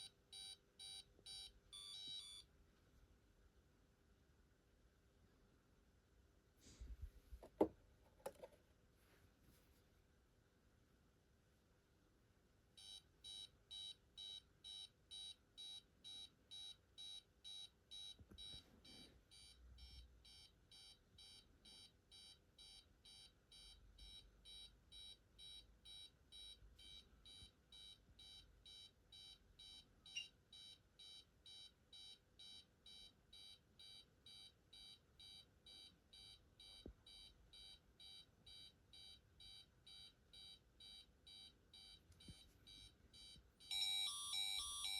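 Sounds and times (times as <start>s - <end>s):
alarm high-pitched pulsed beep: 19.4s - 44.9s.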